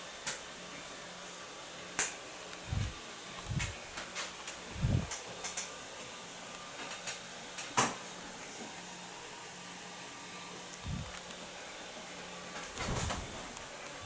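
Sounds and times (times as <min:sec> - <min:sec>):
faint hiss and low hum: 0:00.0 - 0:14.0
dull low thumps: 0:04.7 - 0:05.1, 0:10.8 - 0:11.1.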